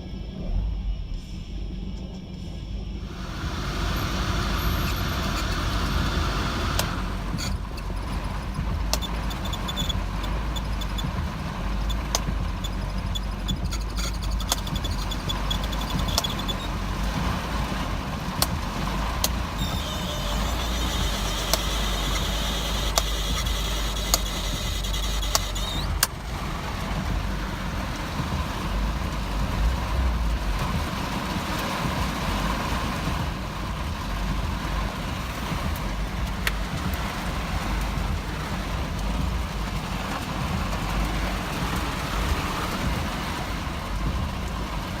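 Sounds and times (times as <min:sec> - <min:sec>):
hiss: 0:00.4 - 0:43.5
car engine idling roughly: 0:03.0 - 0:45.0
sharp ticks: 0:03.2 - 0:16.8, 0:18.4 - 0:26.2.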